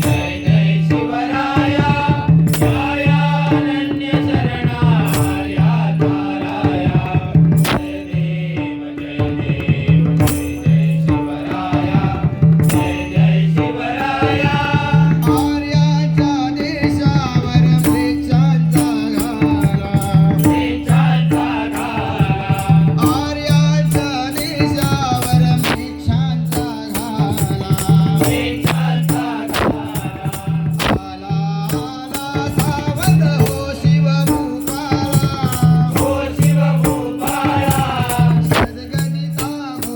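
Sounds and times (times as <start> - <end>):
hand cymbals clinking: 0.0 - 1.0, 15.2 - 39.9
devotional singing: 0.0 - 39.9
hand drums: 0.0 - 39.9.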